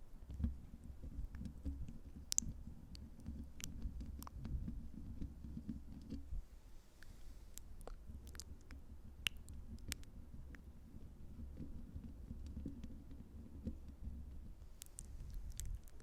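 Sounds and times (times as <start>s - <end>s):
rubbing against microphone: 0.0s - 16.0s
sticky mouth clicks: 1.2s - 4.6s, 7.0s - 10.7s, 14.8s - 16.0s.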